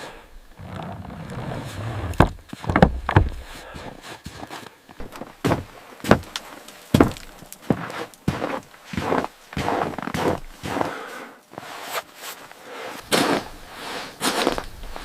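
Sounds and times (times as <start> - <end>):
irregular knocks and thumps: 2.0 - 3.6, 5.0 - 6.4.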